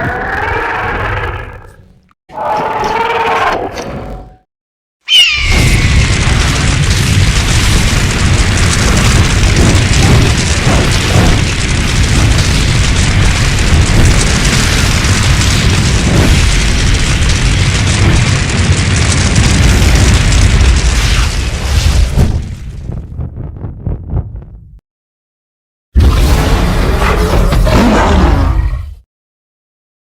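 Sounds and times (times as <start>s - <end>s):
creature screech: 0.0s - 3.9s, 5.1s - 6.6s
rumbling creature roar: 0.0s - 4.2s, 26.0s - 29.0s.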